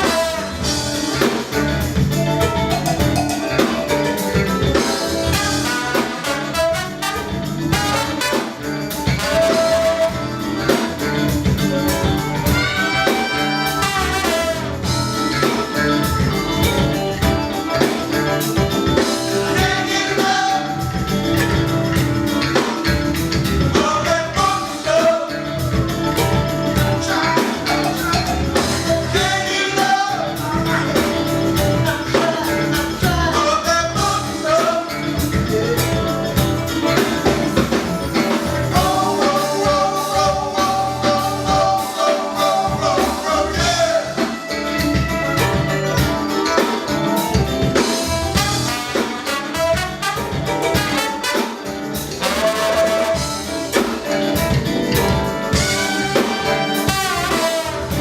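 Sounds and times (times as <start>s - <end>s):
live band playing: 0.0s - 58.0s
person singing: 11.9s - 18.0s, 18.6s - 21.7s, 23.5s - 37.4s, 38.2s - 53.9s.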